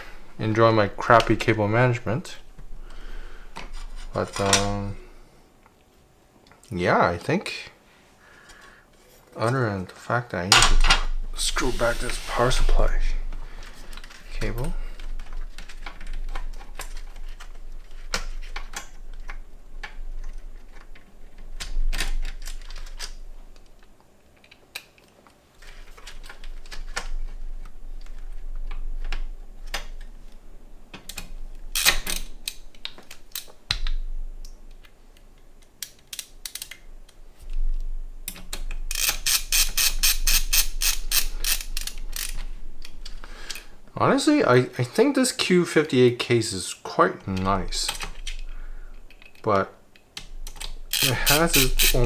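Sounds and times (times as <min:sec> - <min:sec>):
fast run of clicks: 0:38.9 - 0:42.5, 0:50.5 - 0:52.0
screwdriver clicks and knocks: 0:50.5 - 0:52.0.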